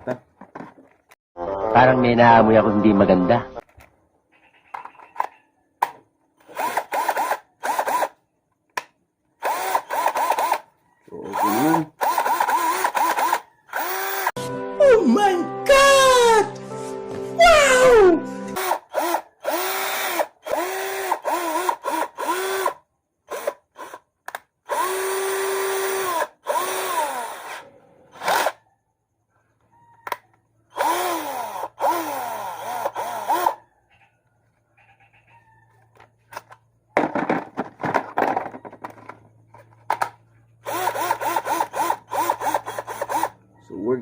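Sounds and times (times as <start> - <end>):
cordless drill motor whining: 6.4 - 8.2, 9.4 - 14.4, 18.6 - 28.6, 30.0 - 33.6, 40.6 - 43.4.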